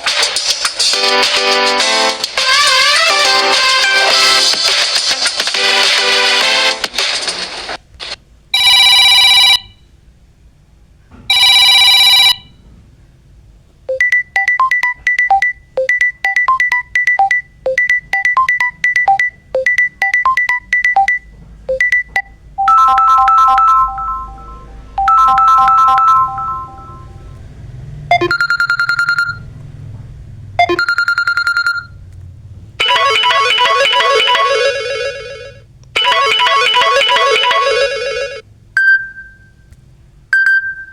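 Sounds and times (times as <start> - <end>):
musical ringtone: 0.8 - 4.7, 13.9 - 27.4, 28.1 - 29.4, 30.6 - 31.9, 32.8 - 39.6, 40.4 - 40.9
bright phone chimes: 8.6 - 9.7, 11.3 - 12.5, 13.9 - 27.3, 32.8 - 39.7
notification pings: 13.9 - 27.4, 28.1 - 29.4, 32.8 - 35.4, 36.0 - 39.6
plucked electronic melody: 22.1 - 27.4, 32.8 - 35.0, 36.0 - 38.4.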